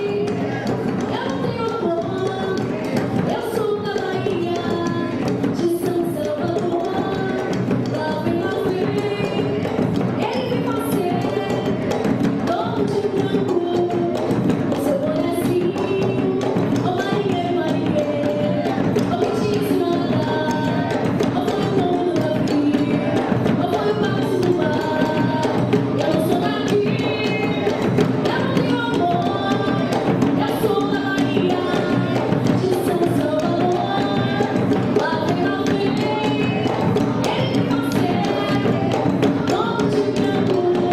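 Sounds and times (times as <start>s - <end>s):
driving percussion beat: 0.0s - 40.9s
voices singing a melody: 17.7s - 40.9s.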